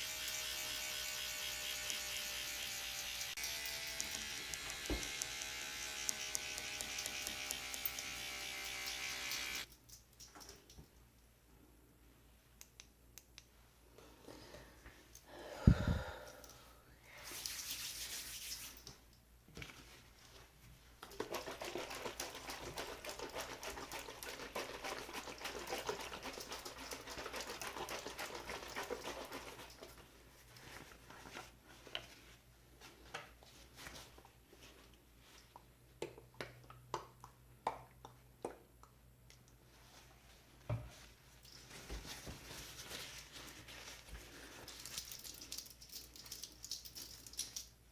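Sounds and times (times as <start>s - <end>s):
dense crinkling rustle: 39.7s - 45.6s.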